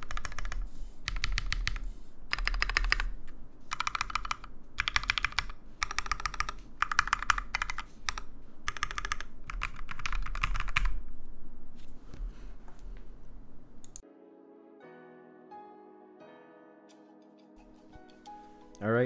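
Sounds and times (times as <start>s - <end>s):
mechanical keyboard typing: 0.0s - 11.0s.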